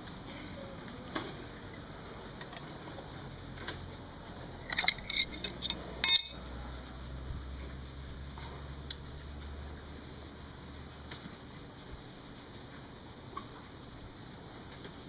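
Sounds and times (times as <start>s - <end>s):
small metal parts clinking: 4.6s - 6.9s.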